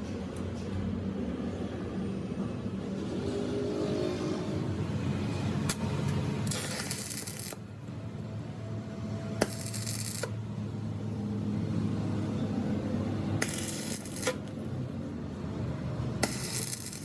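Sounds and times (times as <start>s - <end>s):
sharp metallic clicks: 9.4s - 10.4s.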